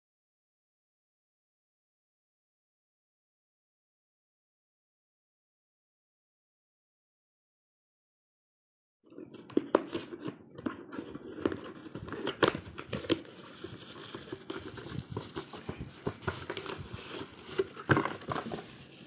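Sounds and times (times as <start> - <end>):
crinkling and clicking handling: 9.1 - 19.0.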